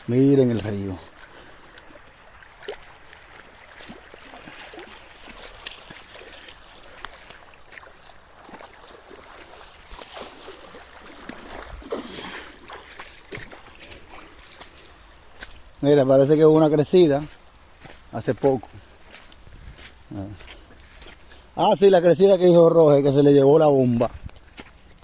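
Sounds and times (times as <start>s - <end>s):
river water rushing: 0.0s - 18.0s.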